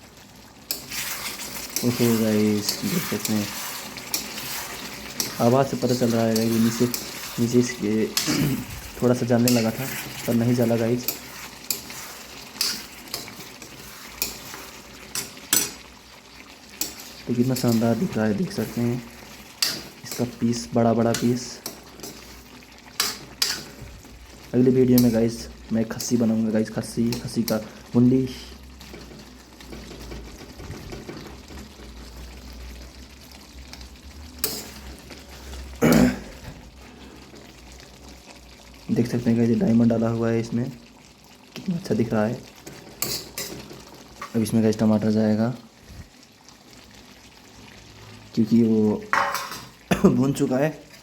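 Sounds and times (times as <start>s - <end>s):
chicken sizzling in a pan: 0.0s - 51.0s
spoon scraping the pan: 0.5s - 26.4s, 34.4s - 35.6s, 42.5s - 44.4s, 49.1s - 49.8s.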